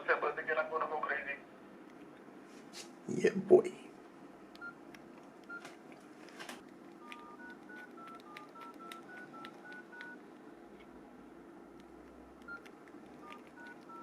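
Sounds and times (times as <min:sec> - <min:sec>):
phone keypad beeping: 0:04.6 - 0:04.8, 0:05.4 - 0:05.7, 0:07.0 - 0:10.2, 0:12.4 - 0:14.0.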